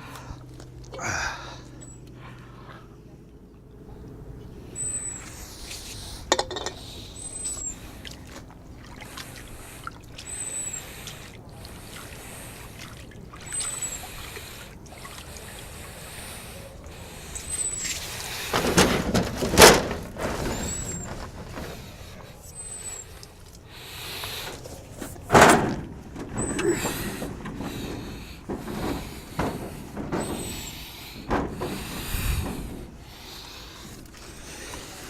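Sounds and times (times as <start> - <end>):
scrubbing and scraping glass: 9.0 - 35.0.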